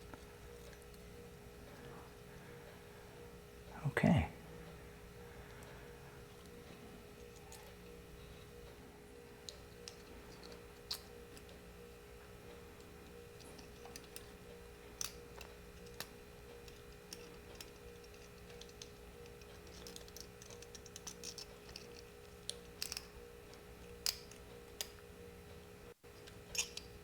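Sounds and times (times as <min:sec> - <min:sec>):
steady low hum: 0:00.0 - 0:27.0
small metal parts clicking: 0:09.4 - 0:11.6, 0:12.8 - 0:25.0, 0:26.0 - 0:27.0.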